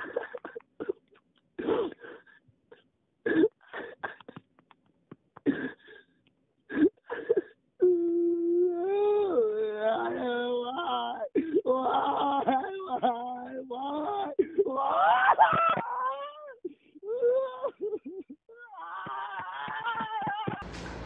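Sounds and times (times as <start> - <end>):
person wailing moan: 7.8 - 16.6.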